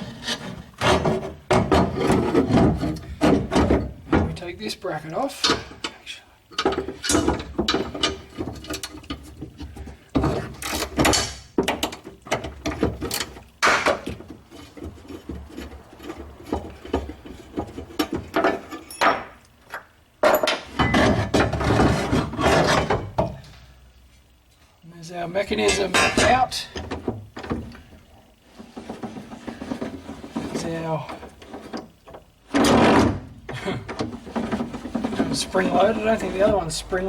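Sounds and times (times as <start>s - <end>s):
metallic knocks and rattles: 0.8s - 4.5s, 6.5s - 23.4s.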